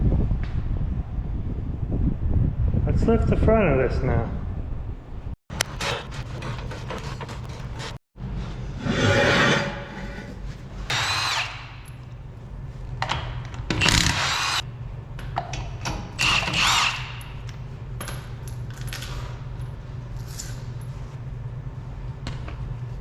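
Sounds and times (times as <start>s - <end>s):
steady low hum: 4.3s - 23.0s
power tool bursts: 13.8s - 14.6s.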